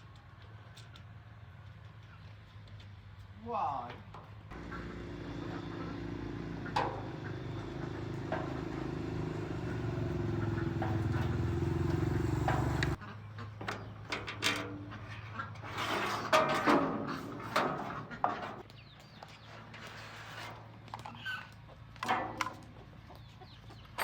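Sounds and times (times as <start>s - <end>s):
motor humming: 4.5s - 13.0s.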